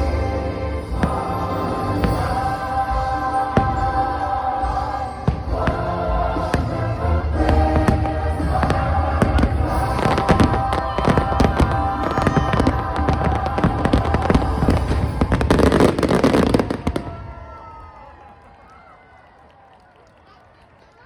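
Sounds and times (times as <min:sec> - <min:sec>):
show music with long chords: 0:00.0 - 0:16.8
firework bursts and crackles: 0:05.1 - 0:17.6.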